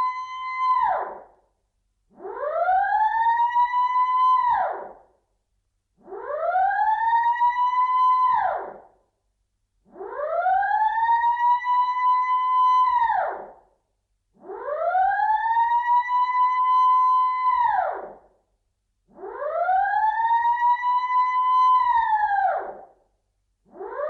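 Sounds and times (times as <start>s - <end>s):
alarm siren wailing: 0.0s - 1.2s, 2.1s - 5.0s, 6.0s - 8.8s, 9.9s - 13.5s, 14.4s - 18.2s, 19.1s - 22.8s, 23.7s - 24.0s.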